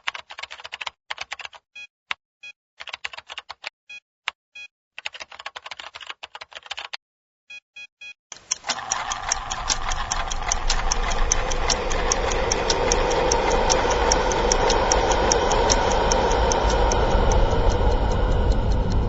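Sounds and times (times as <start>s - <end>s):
even ticking: 8.3s - 19.0s
steady noisy rumble: 9.0s - 19.0s.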